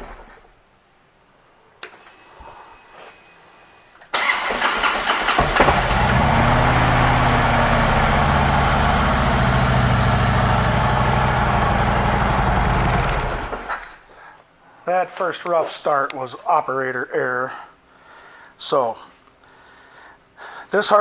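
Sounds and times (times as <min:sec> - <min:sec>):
electric starter cranking: 0:04.2 - 0:13.8
motorcycle engine idling: 0:05.7 - 0:13.8.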